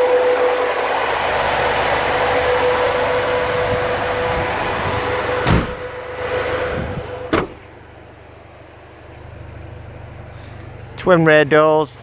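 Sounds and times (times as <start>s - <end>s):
steady mechanical hum: 0.0s - 12.0s
sharp metal knocks: 5.4s - 5.9s, 7.3s - 7.7s.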